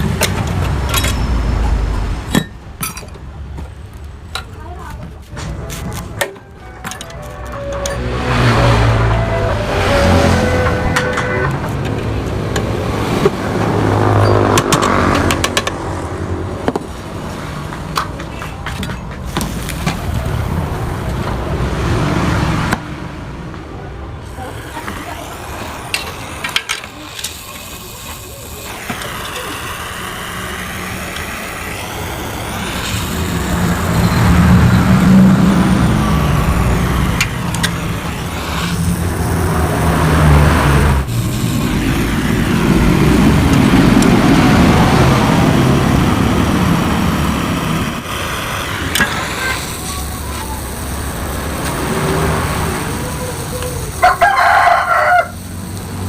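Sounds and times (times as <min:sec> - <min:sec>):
vehicle engine running: 0:00.0 - 0:56.0
rooster crowing: 0:54.0 - 0:55.4.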